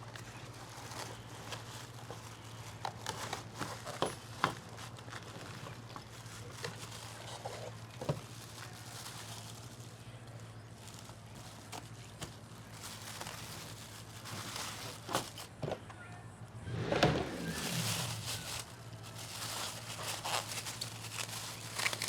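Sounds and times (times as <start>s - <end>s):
plastic packaging clicks and knocks: 20.2s - 22.0s.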